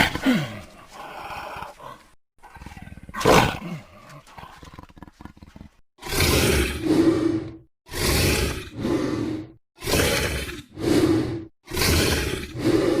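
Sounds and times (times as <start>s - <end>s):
low rasping growl: 0.2s - 13.0s
creature roaring: 6.0s - 13.0s.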